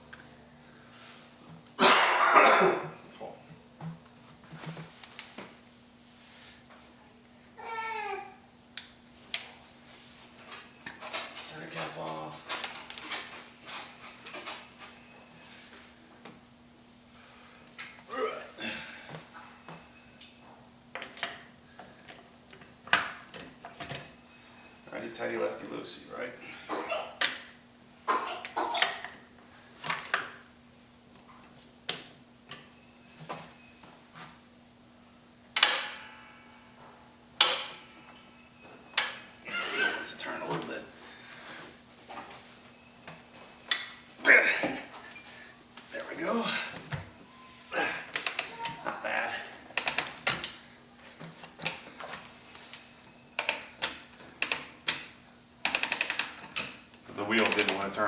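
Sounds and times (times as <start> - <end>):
faint steady hum: 0.0 - 58.0
tools knocking and clacking: 37.4 - 37.9.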